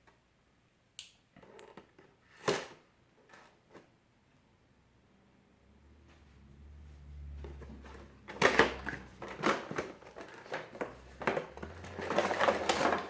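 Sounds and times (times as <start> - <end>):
plastic and cardboard crinkling: 7.4 - 13.0.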